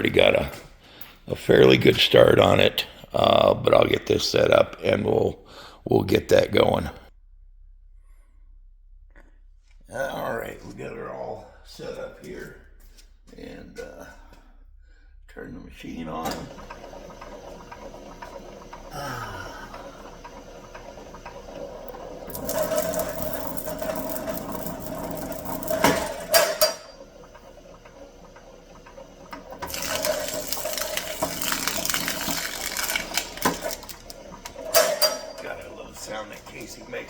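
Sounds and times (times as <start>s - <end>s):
wire-stripping machine running: 16.2s - 37.0s
cable insulation ripping: 29.6s - 34.5s.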